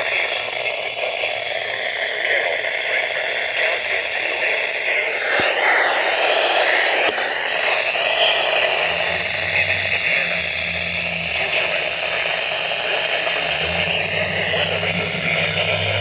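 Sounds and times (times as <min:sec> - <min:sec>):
radio static hiss: 0:00.0 - 0:16.0
low steady engine-like hum: 0:07.5 - 0:16.0.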